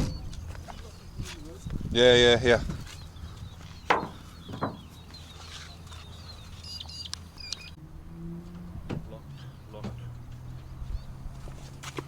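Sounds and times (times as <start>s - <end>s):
faint bird chirps: 2.8s - 7.8s
sharp knocks: 3.9s - 5.0s.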